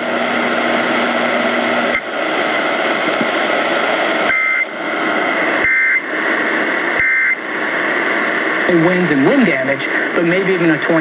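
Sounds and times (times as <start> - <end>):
radio static hiss: 0.0 - 11.0
warbling two-tone data bursts: 4.3 - 4.7, 5.6 - 6.1, 7.0 - 7.4.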